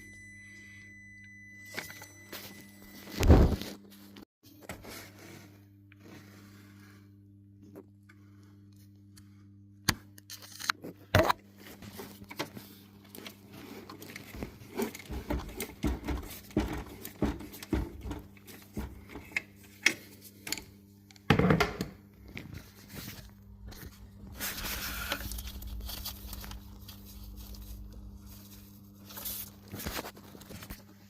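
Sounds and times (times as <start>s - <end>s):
steady low hum: 10.9s - 30.9s.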